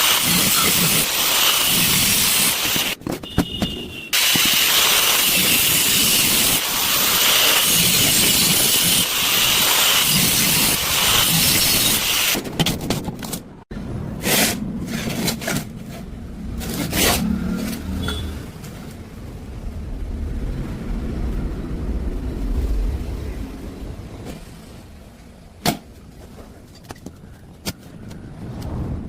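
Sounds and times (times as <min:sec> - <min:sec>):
harsh metalworking hiss: 0:00.0 - 0:03.0, 0:04.2 - 0:12.4
low rumble: 0:13.7 - 0:25.6, 0:28.2 - 0:29.0.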